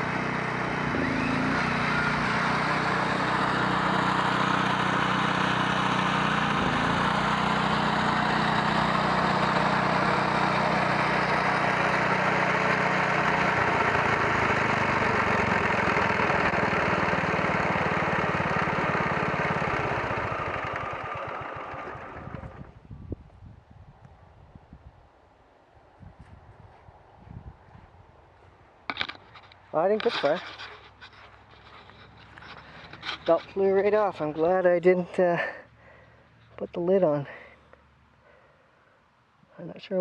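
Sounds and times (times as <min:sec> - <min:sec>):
lawn tractor engine running: 0:00.0 - 0:22.8, 0:28.9 - 0:38.0.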